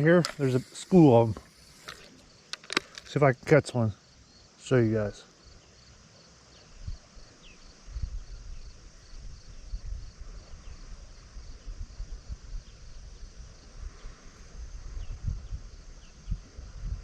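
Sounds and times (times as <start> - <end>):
insect chirping: 0.0 - 17.0
wind buffeting microphone: 7.8 - 17.0.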